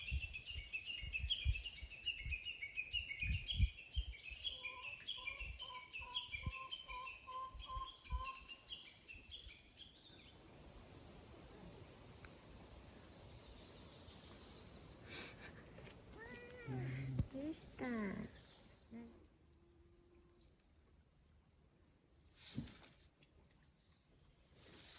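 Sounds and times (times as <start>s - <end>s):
lower repeated bird notes: 0.0s - 10.4s
birds chirping: 0.0s - 10.5s, 12.9s - 19.2s
faint outdoor hiss: 0.0s - 24.9s.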